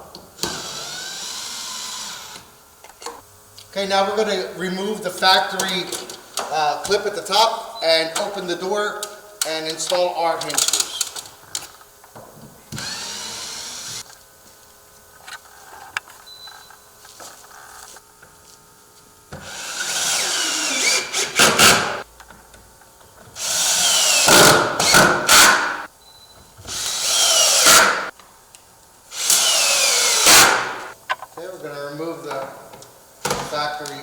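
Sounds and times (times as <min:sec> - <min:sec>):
power drill motor whine: 0:00.4 - 0:02.6, 0:12.7 - 0:14.1, 0:19.4 - 0:22.0, 0:23.4 - 0:28.1, 0:29.1 - 0:31.0.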